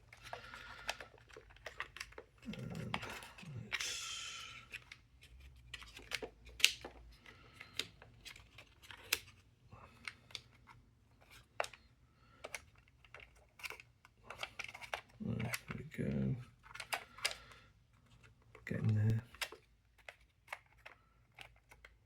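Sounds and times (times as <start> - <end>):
puzzle piece sliding: 0.0 - 9.4.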